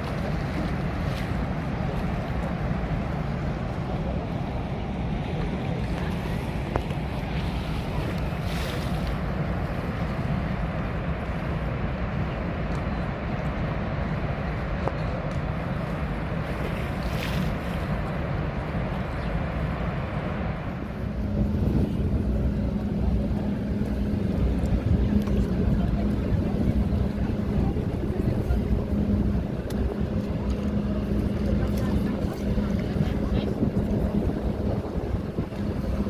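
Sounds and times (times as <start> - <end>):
low motor hum: 0.0 - 36.0
wind buffeting microphone: 0.0 - 36.0
waterfall roaring: 17.8 - 36.0.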